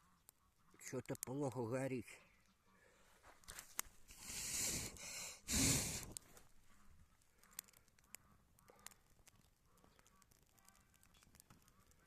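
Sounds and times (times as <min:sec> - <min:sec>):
fire crackling faintly: 0:00.0 - 0:12.0
person blowing on fire: 0:04.1 - 0:06.2.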